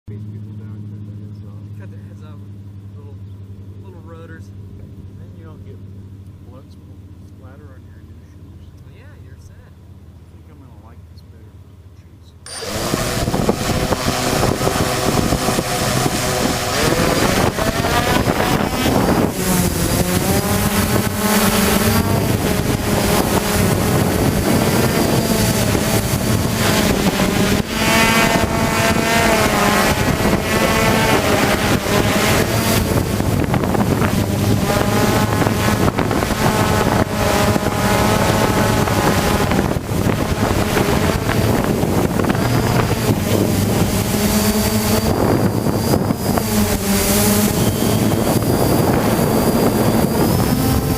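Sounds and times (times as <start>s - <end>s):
drone motors whining: 12.4s - 50.9s
wind buffeting microphone: 12.5s - 50.9s.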